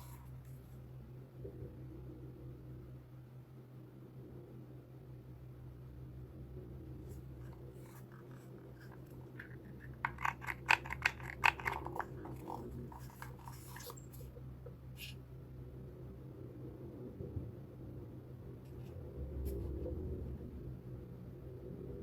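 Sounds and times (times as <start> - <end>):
sharp clicks and rustles: 7.4 - 15.1
hands unpacking items: 7.5 - 14.4.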